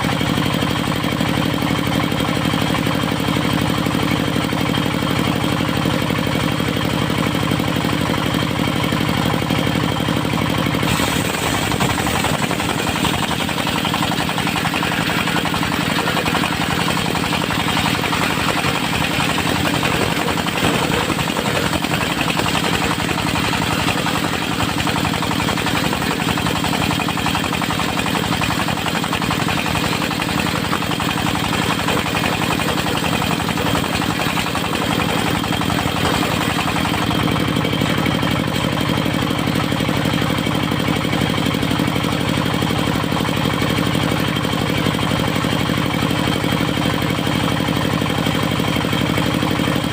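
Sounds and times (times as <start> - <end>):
diesel engine running: 0.0 - 49.9
circular saw cutting log: 10.6 - 38.8.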